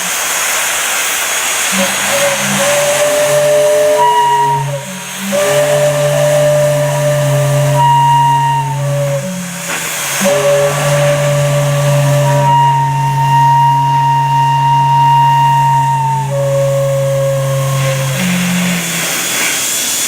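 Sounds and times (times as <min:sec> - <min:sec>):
hiss of steam: 0:00.0 - 0:20.0
steam whistles blowing: 0:00.0 - 0:20.0.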